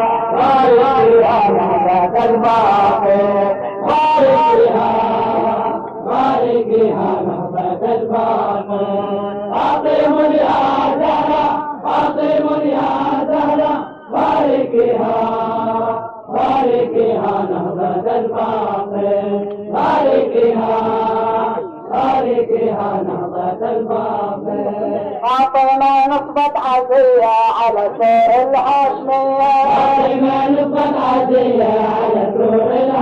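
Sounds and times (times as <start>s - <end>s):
man chanting melodic elegy: 0.0s - 5.8s, 24.9s - 30.4s.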